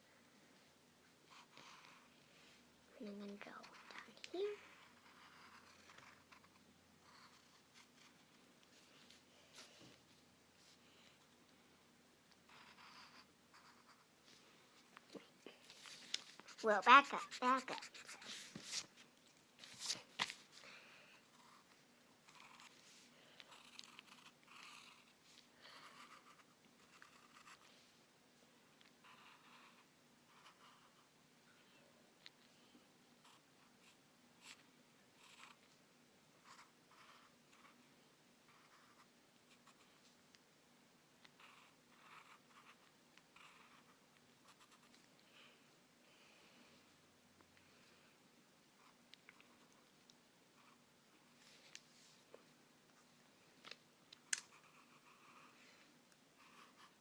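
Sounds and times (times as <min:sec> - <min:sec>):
pen scratching on paper: 0:03.6 - 0:08.3, 0:12.5 - 0:14.1, 0:16.3 - 0:18.8, 0:22.3 - 0:27.7, 0:29.0 - 0:31.1, 0:36.4 - 0:37.8, 0:38.5 - 0:39.9, 0:41.4 - 0:45.0, 0:56.4 - 0:57.0.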